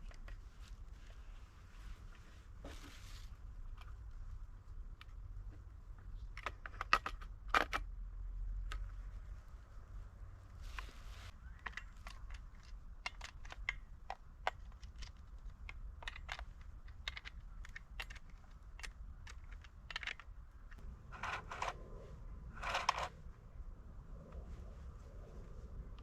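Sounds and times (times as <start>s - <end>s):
short rustle: 0.2s - 3.6s, 9.1s - 11.4s
small hard parts clicking: 6.3s - 7.9s, 11.4s - 21.8s.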